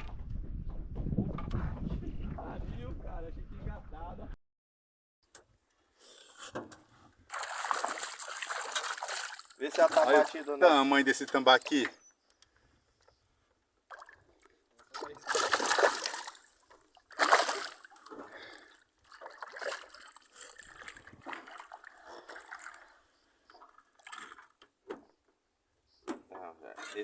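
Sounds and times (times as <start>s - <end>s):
fish splashing in water: 7.3s - 10.5s, 14.9s - 23.0s.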